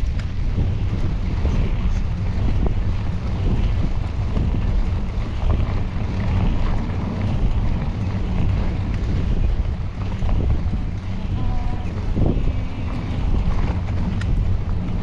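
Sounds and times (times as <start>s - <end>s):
bike ticks and knocks: 0.0s - 15.0s
wind buffeting microphone: 0.0s - 15.0s.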